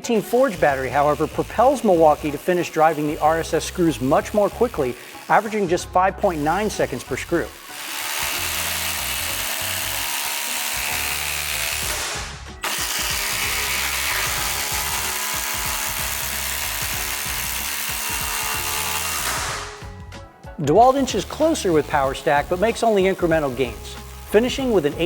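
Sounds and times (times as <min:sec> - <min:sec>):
impact driver hammering screws: 0:00.0 - 0:19.8.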